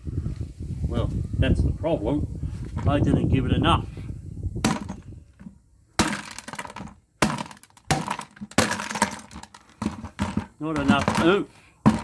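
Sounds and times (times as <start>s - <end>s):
broken pieces clattering: 6.0s - 11.3s
person speaking: 10.6s - 11.6s.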